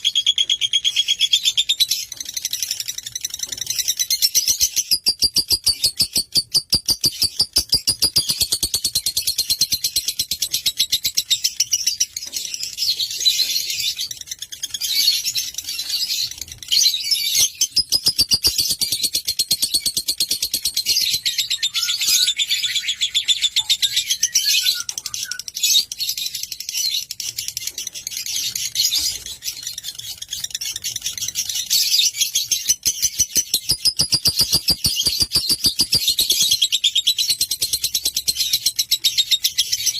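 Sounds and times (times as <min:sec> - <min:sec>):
lovebird chattering song: 0:00.0 - 0:39.9.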